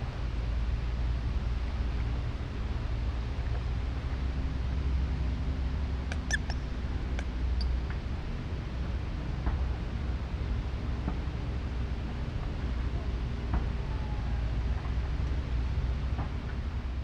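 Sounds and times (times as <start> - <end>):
low rumble with hiss: 0.0 - 17.0
short high chirps: 6.1 - 6.7.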